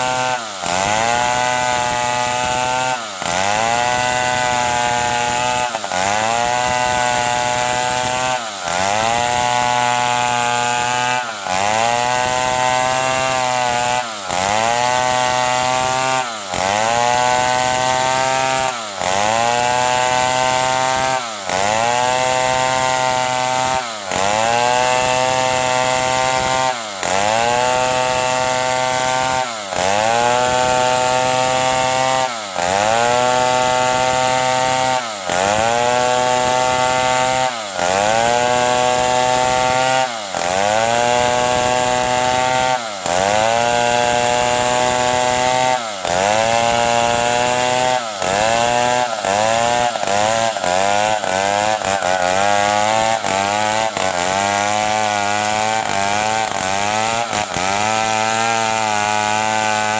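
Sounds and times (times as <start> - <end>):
chainsaw sawing wood: 0.0 - 59.9.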